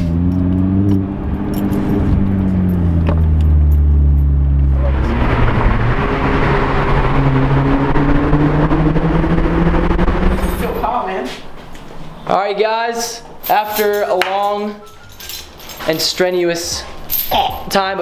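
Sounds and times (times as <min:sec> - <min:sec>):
car engine and exhaust: 0:00.0 - 0:11.9.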